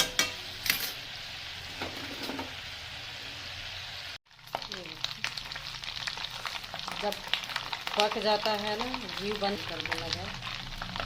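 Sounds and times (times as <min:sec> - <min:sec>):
cream sizzling in a pan: 0:00.0 - 0:11.0
spoon scraping a pan: 0:01.7 - 0:02.6.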